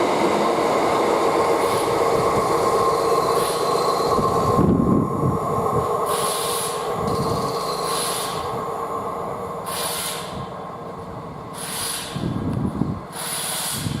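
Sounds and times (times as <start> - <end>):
freight train wagons rolling past: 0.0 - 14.0
wheels squealing: 2.8 - 4.4, 6.1 - 8.5, 11.5 - 12.2, 13.1 - 14.0.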